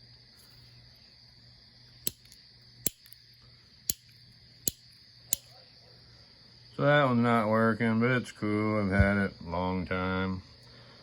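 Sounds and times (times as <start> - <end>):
lighter trigger clicking: 2.1 - 3.2, 4.7 - 5.5.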